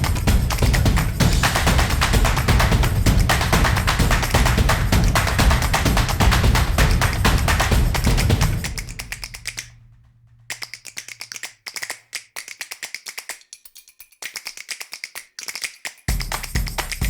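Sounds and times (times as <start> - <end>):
music: 0.0 - 10.0, 16.1 - 17.0
rapid even clicking: 0.0 - 17.0.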